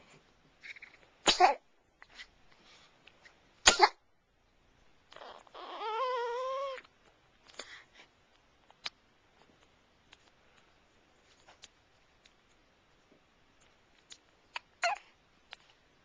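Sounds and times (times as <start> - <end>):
sharp hiccups: 3.6 - 4.0.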